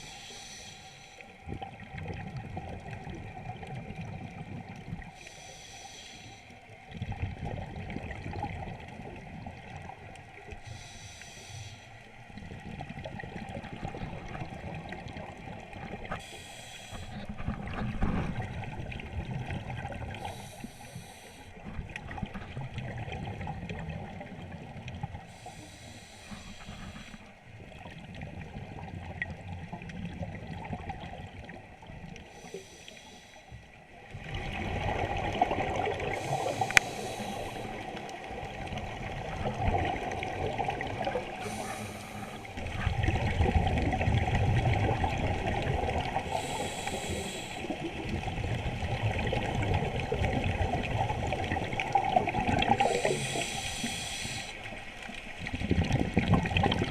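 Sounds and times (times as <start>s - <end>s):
regulator hiss on inhale: 0.0s - 1.4s, 5.2s - 6.6s, 10.6s - 12.1s, 16.1s - 17.4s, 20.1s - 21.6s, 25.3s - 27.4s, 32.2s - 33.8s, 36.1s - 38.0s, 41.3s - 42.6s, 46.2s - 47.9s, 52.7s - 54.8s
bubbling exhalations underwater: 34.1s - 54.0s, 55.4s - 56.9s.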